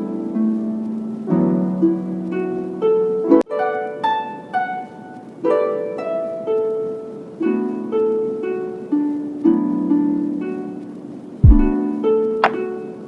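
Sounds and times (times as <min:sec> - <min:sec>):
plucked harp-like melody: 0:00.0 - 0:13.0.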